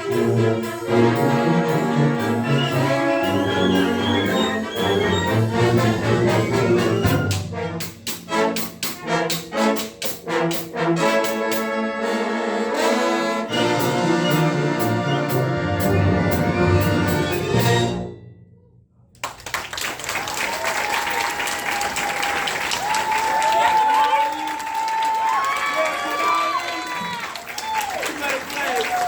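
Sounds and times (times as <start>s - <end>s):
concert band with brass: 0.0s - 18.4s.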